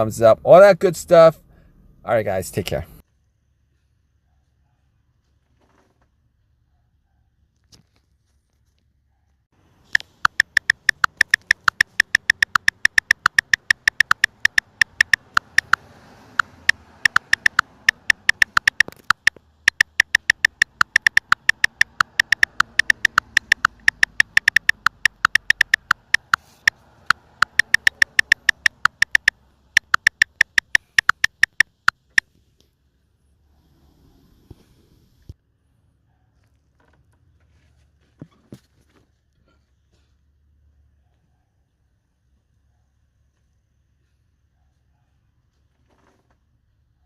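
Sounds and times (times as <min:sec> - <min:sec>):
rapid mechanical clicking: 0:10.0 - 0:32.2.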